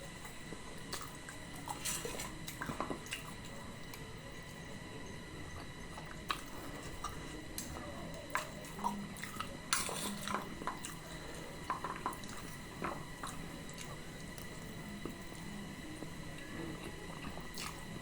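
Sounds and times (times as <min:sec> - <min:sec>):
wet chewing noises: 0:05.5 - 0:18.0.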